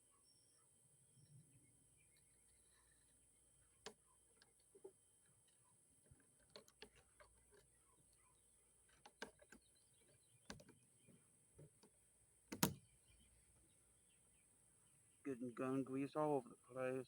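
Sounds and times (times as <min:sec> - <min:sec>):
gun parts clicking and knocking: 0:08.9 - 0:10.8, 0:12.5 - 0:12.8.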